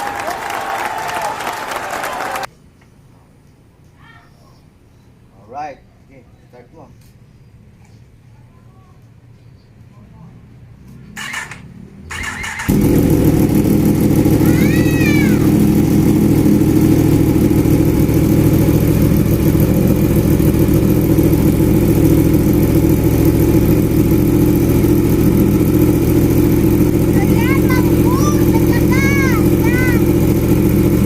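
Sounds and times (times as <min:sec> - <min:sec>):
motorcycle engine cranking: 0:11.1 - 0:14.4
motorcycle engine idling: 0:11.2 - 0:31.0.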